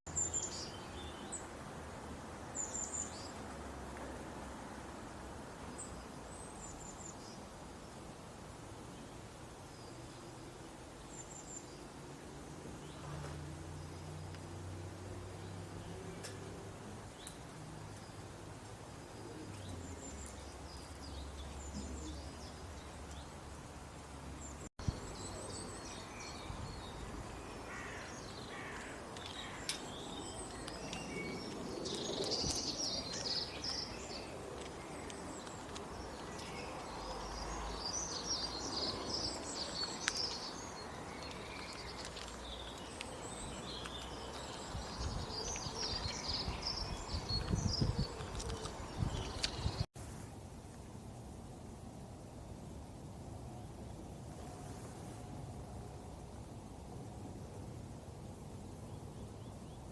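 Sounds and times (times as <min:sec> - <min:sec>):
outdoor background noise: 0:00.1 - 0:59.9
small birds chirping: 0:15.3 - 0:49.9.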